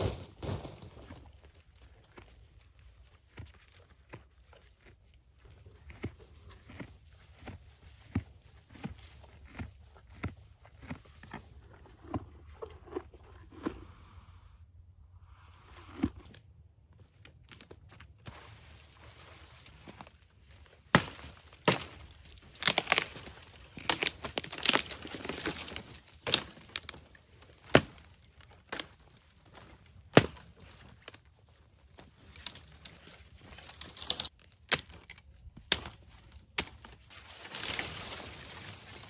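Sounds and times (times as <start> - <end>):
brush rustling: 18.2 - 27.6, 36.8 - 39.0
dry sticks snapping: 21.0 - 27.0, 33.7 - 38.5.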